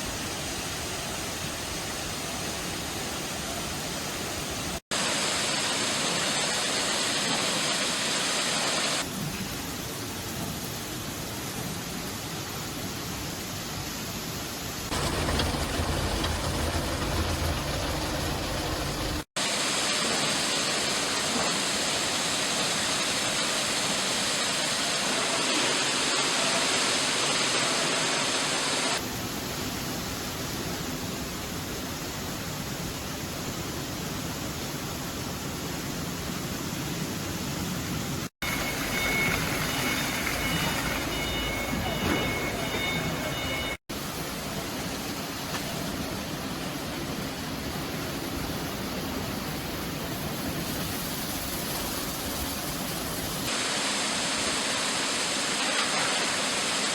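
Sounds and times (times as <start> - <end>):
car wash water spray and brushes: 14.6 - 30.2, 38.4 - 56.9
faint high whine: 38.4 - 43.8.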